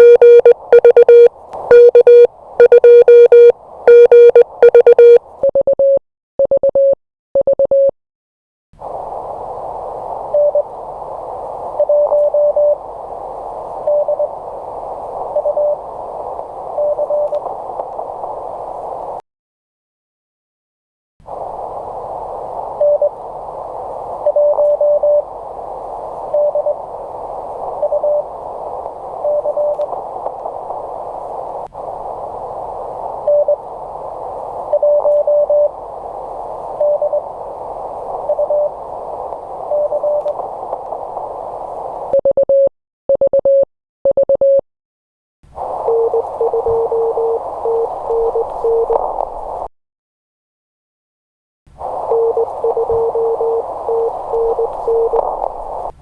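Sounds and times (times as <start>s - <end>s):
radio receiver hiss: 0.0s - 5.2s, 8.8s - 19.2s, 21.2s - 42.2s, 45.5s - 49.7s, 51.7s - 56.0s
morse code tones: 0.0s - 7.9s, 45.9s - 48.9s, 52.1s - 55.2s.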